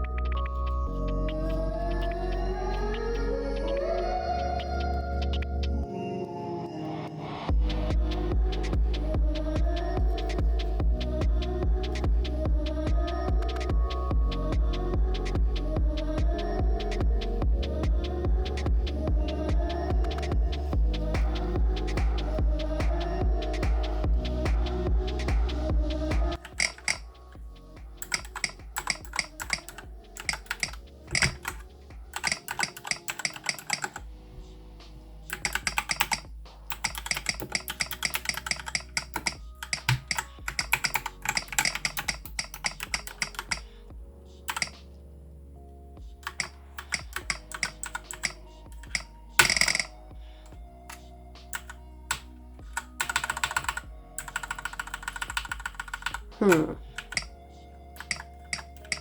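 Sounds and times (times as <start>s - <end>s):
typing on mechanical keyboard: 26.4s - 27.0s, 28.0s - 31.6s, 32.2s - 34.0s, 35.3s - 43.6s, 44.5s - 44.7s, 46.2s - 49.9s, 52.8s - 57.3s, 58.0s - 59.0s.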